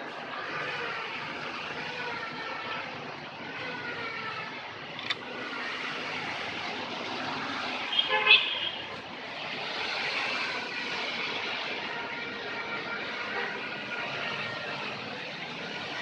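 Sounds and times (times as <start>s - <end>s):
car horn toot: 7.9s - 8.8s.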